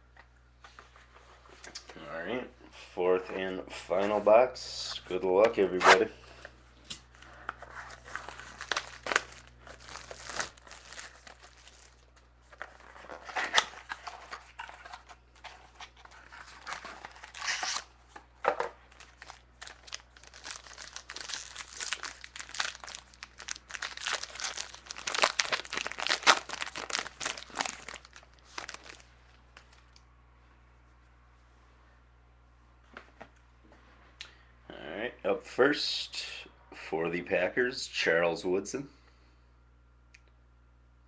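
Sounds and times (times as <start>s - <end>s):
wrapping tearing and crinkling: 7.2s - 17.9s, 18.9s - 30.0s.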